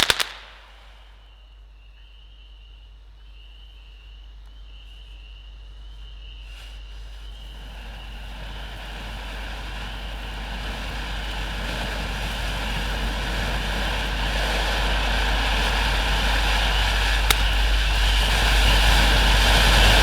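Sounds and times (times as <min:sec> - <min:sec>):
sharp pop: 0:00.0 - 0:00.8
firework fountain hissing: 0:00.0 - 0:01.2, 0:06.4 - 0:20.0.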